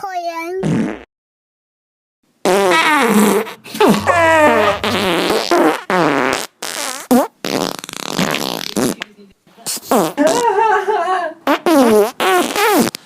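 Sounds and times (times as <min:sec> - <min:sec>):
cartoon fart sound effects: 0:00.6 - 0:01.0, 0:02.4 - 0:09.0, 0:11.5 - 0:13.0.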